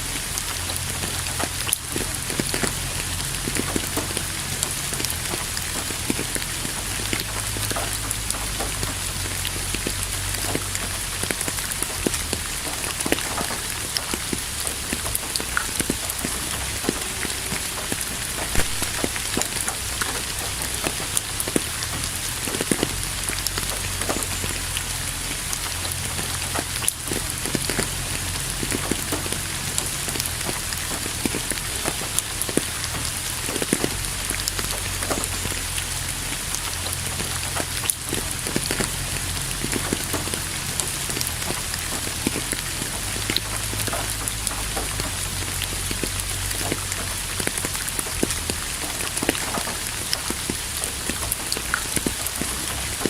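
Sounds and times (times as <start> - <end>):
raindrops ticking on a surface: 0.0 - 53.0
steady rain hiss: 0.0 - 53.0.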